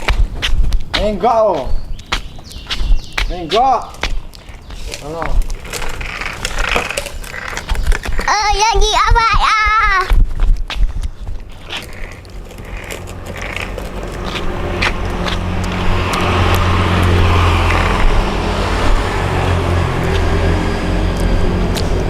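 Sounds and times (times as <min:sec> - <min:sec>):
vehicle engine running: 0:11.4 - 0:22.0.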